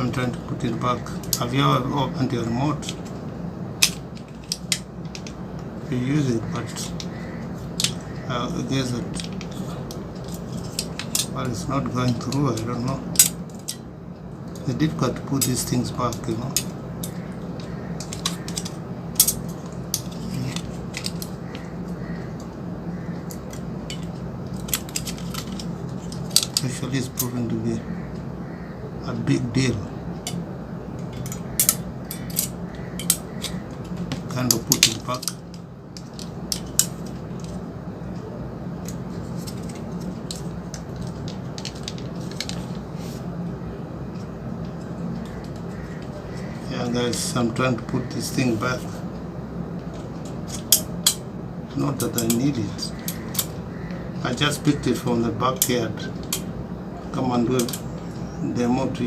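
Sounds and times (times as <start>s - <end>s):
low background hum: 0.0s - 59.0s
plastic parts clicking and tapping: 38.8s - 42.8s.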